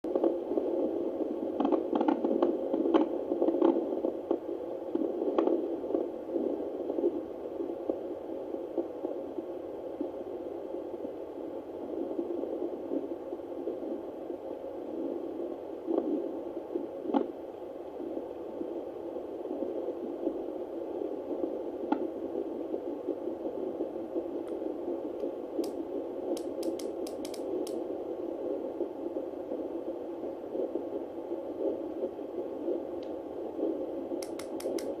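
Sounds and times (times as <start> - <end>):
doppler monitor static hiss: 0.1 - 35.0
faint fetal heartbeat: 0.1 - 35.0
probe scraping clicks: 25.2 - 27.8, 34.2 - 35.0.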